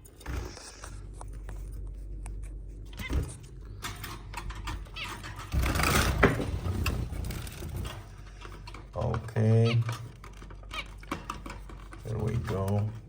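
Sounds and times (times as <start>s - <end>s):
handling and rustling noise: 0.0s - 13.0s
zebra finches calling: 9.0s - 11.6s.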